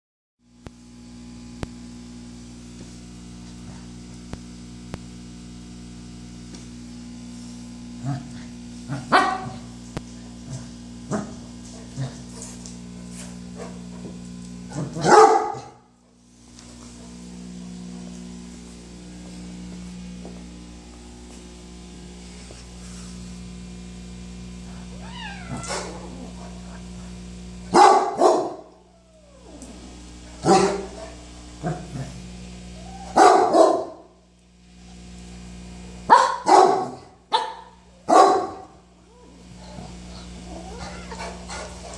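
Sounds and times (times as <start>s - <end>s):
steady low hum: 0.5s - 41.9s
dog barking: 9.1s - 9.6s, 14.7s - 15.8s, 27.7s - 28.7s, 30.4s - 31.9s, 33.1s - 34.0s, 36.1s - 38.7s.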